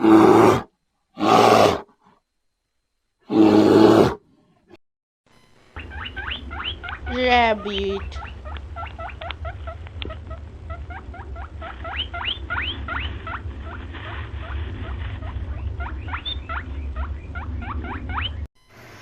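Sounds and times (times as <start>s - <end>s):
steady low hum: 0.0s - 3.3s, 5.3s - 19.0s
rabbit squeaking: 5.8s - 18.5s.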